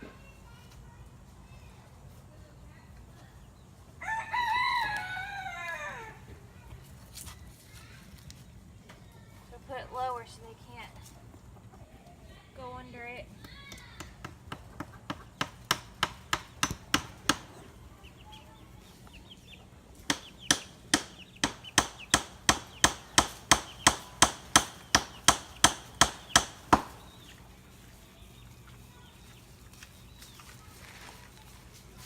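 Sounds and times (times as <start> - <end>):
hens clucking: 11.0 - 12.4, 14.5 - 15.8
hammer striking a nail: 13.7 - 17.5, 20.1 - 27.0.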